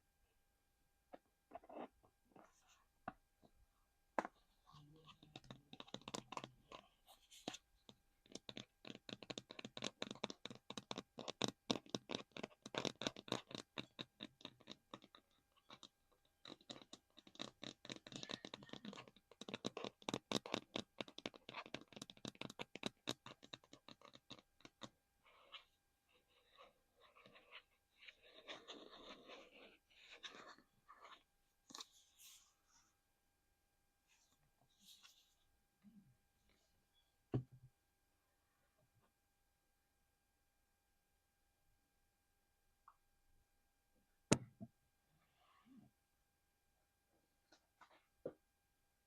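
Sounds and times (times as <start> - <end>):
fingers tapping and scratching: 4.2 - 32.0.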